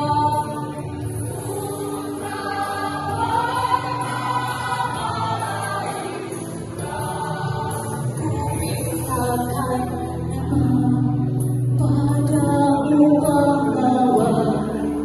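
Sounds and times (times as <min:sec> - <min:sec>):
choir singing long notes: 0:00.0 - 0:08.6.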